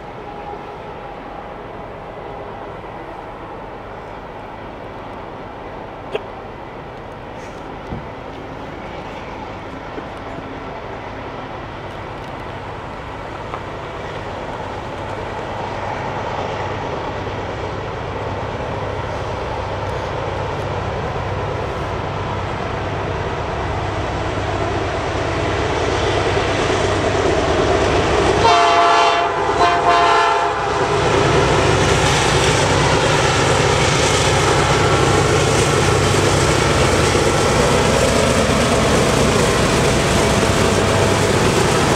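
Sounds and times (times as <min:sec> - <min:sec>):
freight train approaching: 0:00.0 - 0:41.9
locomotive engines rumbling: 0:00.0 - 0:41.9
train horn: 0:28.4 - 0:31.0.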